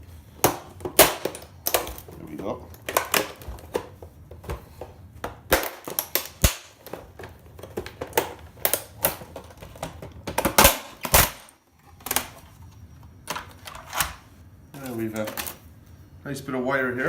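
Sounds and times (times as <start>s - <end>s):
plastic casing clicks and clatter: 0.4s - 4.6s, 5.2s - 11.3s, 14.8s - 15.6s.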